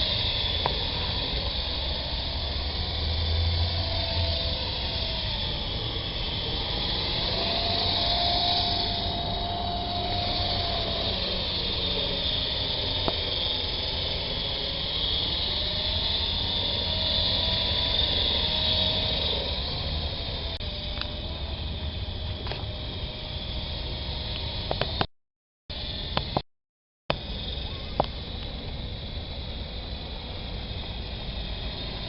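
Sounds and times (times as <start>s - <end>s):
steady hiss: 0.0s - 25.0s
rc helicopter motors whirring: 0.0s - 25.1s, 25.7s - 26.4s, 27.1s - 32.0s.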